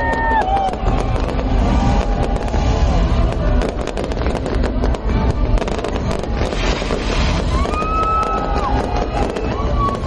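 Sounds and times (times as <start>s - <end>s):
fireworks cracks and bangs: 0.0s - 10.0s
low rumble: 0.0s - 10.0s.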